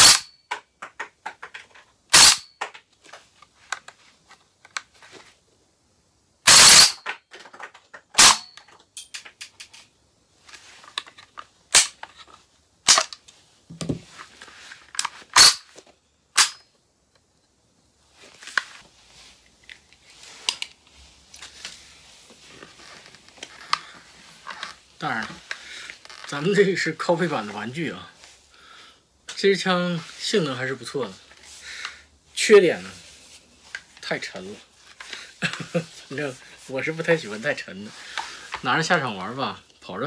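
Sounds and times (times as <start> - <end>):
airsoft rifle shots: 0.0 - 0.3, 2.1 - 2.5, 6.5 - 7.1, 8.2 - 8.6.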